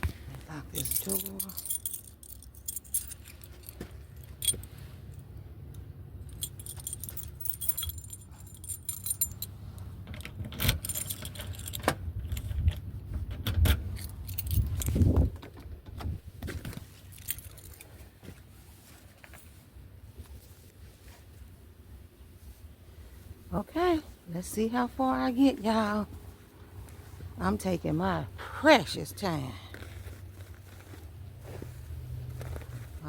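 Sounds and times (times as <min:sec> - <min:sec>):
keys jangling: 0:00.7 - 0:05.3, 0:06.2 - 0:15.3, 0:16.8 - 0:17.9.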